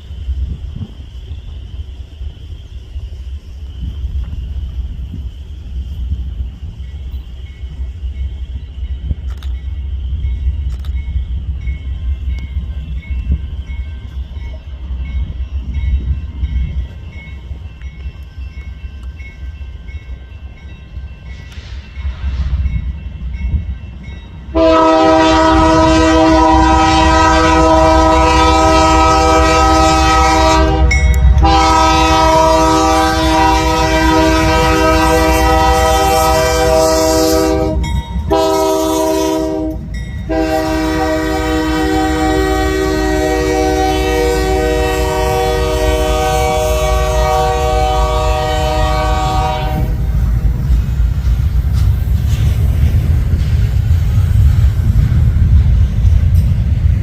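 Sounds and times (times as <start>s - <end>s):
diesel train rumbling: 0.0s - 57.0s
train air horn blasts: 24.5s - 50.0s.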